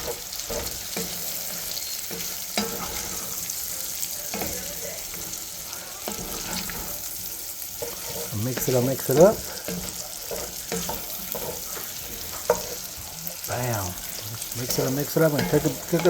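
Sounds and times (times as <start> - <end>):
food sizzling in a pot: 0.0 - 16.0
utensil clinking against pot: 7.8 - 13.0, 14.4 - 16.0.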